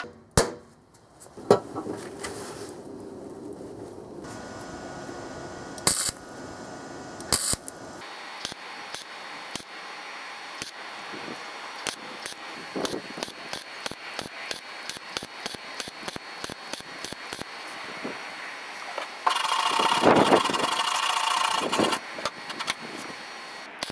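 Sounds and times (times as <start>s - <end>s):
hammer striking sheet steel: 0.0s - 0.7s.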